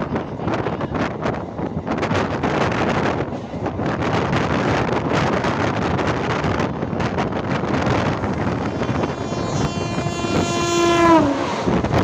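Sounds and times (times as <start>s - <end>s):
rumble of moving train: 0.0s - 12.0s
wind on microphone: 0.0s - 12.0s
train horn blast: 8.0s - 12.0s.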